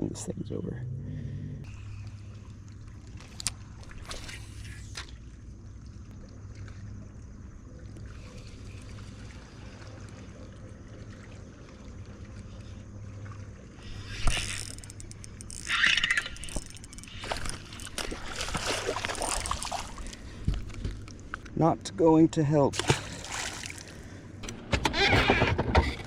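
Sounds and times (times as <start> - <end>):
steady low hum: 0.0 - 26.0
splashing water: 8.8 - 20.5, 22.7 - 24.2.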